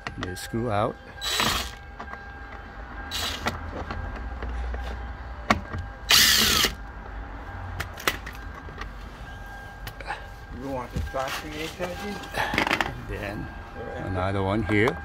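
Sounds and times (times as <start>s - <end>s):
cordless drill bursts: 1.2s - 1.8s, 3.1s - 3.4s, 6.1s - 6.8s.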